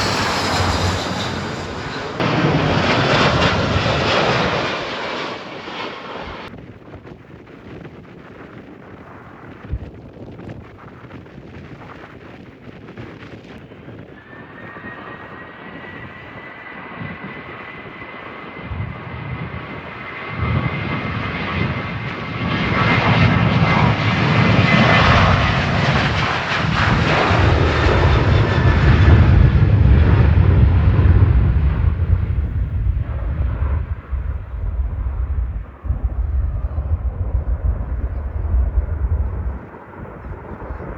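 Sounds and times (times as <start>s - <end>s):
high engine whine: 0.0s - 6.5s
jet airliner engines: 0.0s - 40.9s.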